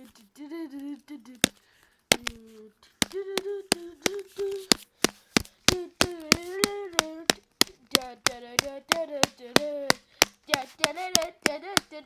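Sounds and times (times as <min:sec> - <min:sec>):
sharp rhythmic smacks: 0:01.4 - 0:12.0
person humming a tune: 0:02.1 - 0:04.8, 0:05.6 - 0:12.0.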